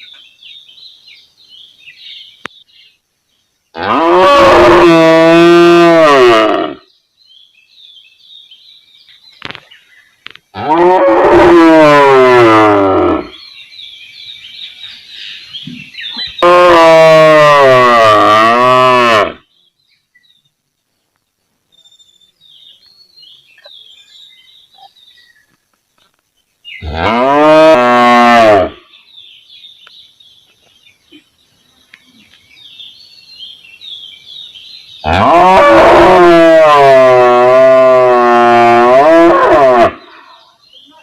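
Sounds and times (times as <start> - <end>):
faint high chirping: 13.2 - 16.5, 19.4 - 27.0, 40.0 - 41.0
cow mooing: 16.4 - 19.4, 26.9 - 28.8.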